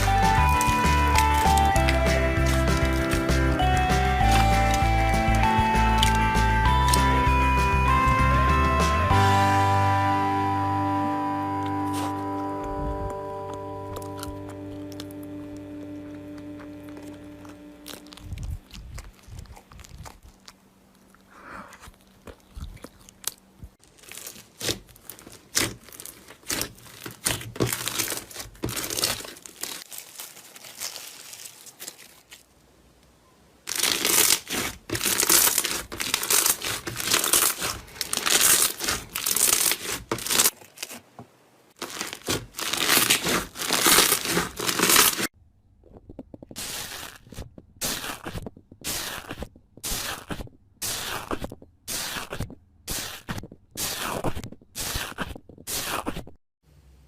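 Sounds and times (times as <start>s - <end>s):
slime crackling and popping: 0.0s - 7.0s, 16.1s - 20.5s, 21.9s - 32.4s, 33.7s - 40.9s, 41.8s - 45.3s, 46.4s - 56.0s.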